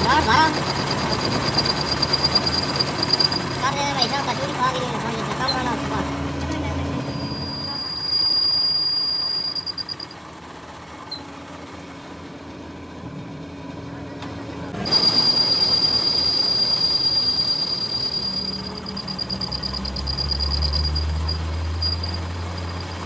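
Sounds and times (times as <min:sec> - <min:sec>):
high-pitched squeal of lathe cutting: 0:00.0 - 0:05.9, 0:07.0 - 0:10.2, 0:14.8 - 0:23.0.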